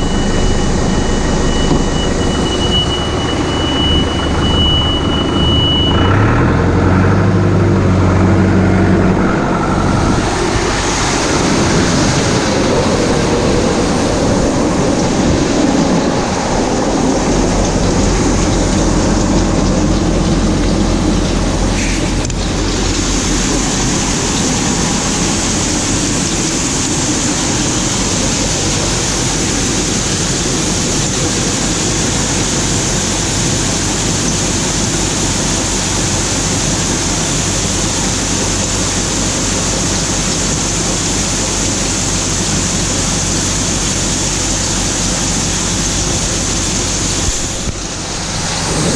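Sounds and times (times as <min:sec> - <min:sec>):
combine harvester running: 0:00.0 - 0:48.9
high hiss: 0:21.6 - 0:48.9.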